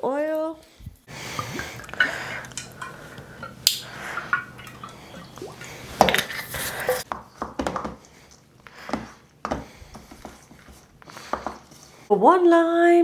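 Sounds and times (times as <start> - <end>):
spoon scraping against a bowl: 1.3 - 7.0.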